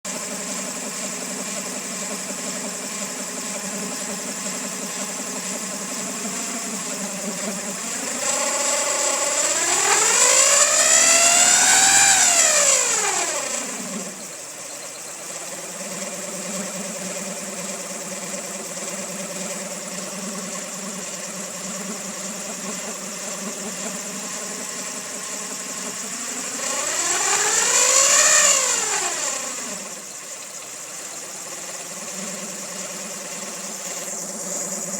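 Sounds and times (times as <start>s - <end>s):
high-pitched engine whine: 0.0s - 34.9s
car engine idling and revving: 0.1s - 34.9s.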